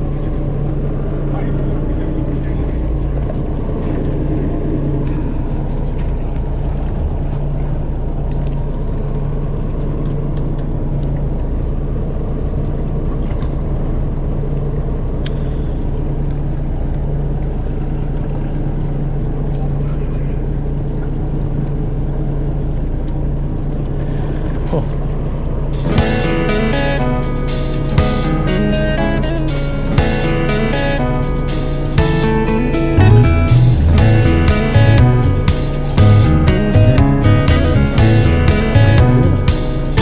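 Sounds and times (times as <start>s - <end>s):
water against hull: 0.0s - 26.6s
boat engine humming: 0.0s - 40.0s.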